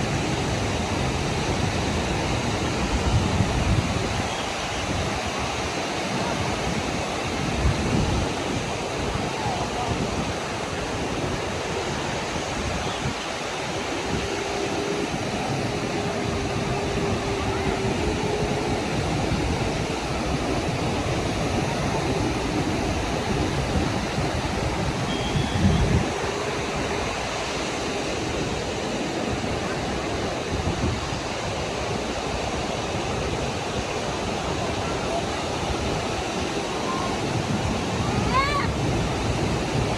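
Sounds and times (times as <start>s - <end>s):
distant voices: 0.0s - 30.6s
surf breaking on beach: 0.0s - 39.9s.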